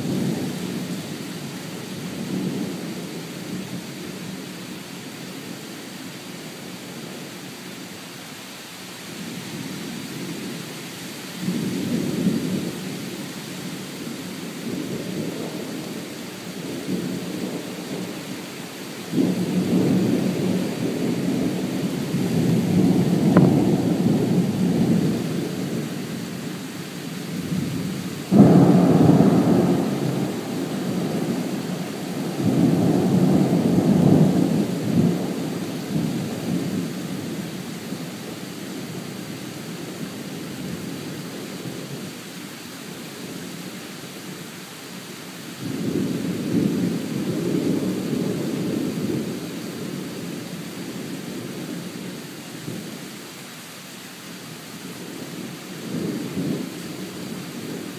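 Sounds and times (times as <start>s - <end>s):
steady hiss: 0.0s - 57.9s
thunder rumbling: 19.1s - 26.4s, 27.4s - 38.0s.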